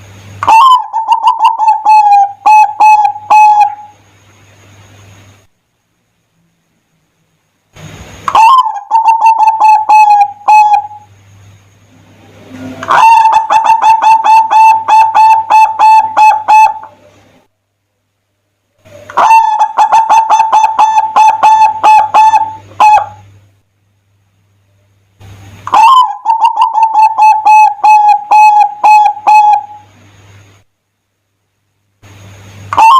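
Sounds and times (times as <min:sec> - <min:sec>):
dove cooing: 0:00.4 - 0:04.0, 0:08.3 - 0:11.1, 0:12.4 - 0:17.2, 0:18.8 - 0:23.3, 0:25.7 - 0:29.9.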